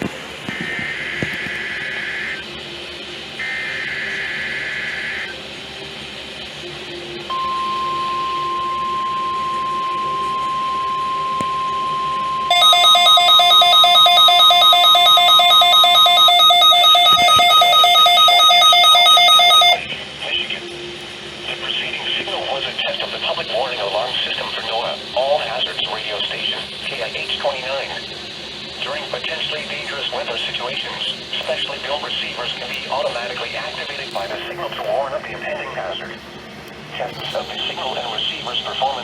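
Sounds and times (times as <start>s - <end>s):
steady warning alarm tone: 0.0s - 36.6s
fast-pulsing electronic alarm beeping: 0.5s - 5.4s, 6.8s - 35.5s
buzzy digital header bursts: 3.4s - 5.3s.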